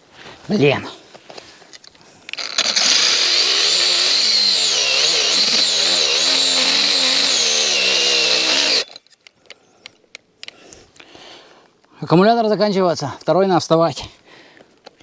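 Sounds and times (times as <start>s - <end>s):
angle grinder cutting metal: 2.4s - 9.0s.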